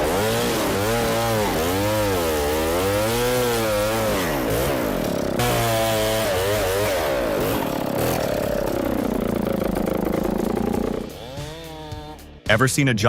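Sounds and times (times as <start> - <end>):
chainsaw engine revving: 0.0 - 12.5.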